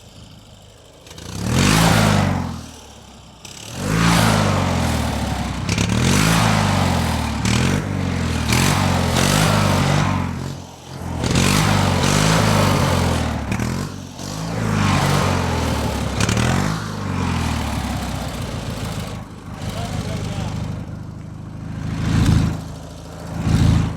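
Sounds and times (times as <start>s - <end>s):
engine revving: 0.0s - 23.9s.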